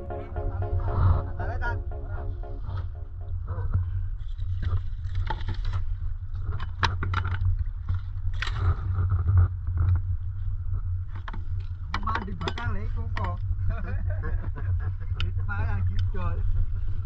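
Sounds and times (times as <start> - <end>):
boat engine droning: 0.0 - 3.9.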